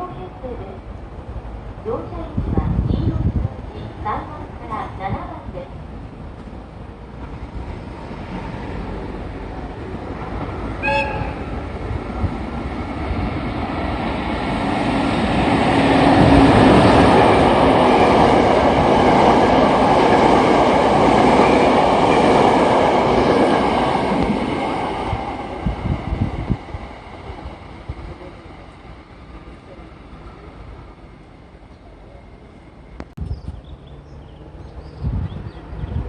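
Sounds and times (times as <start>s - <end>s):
train rumble and wheel noise: 0.0s - 36.0s
train horn blast: 10.8s - 11.5s.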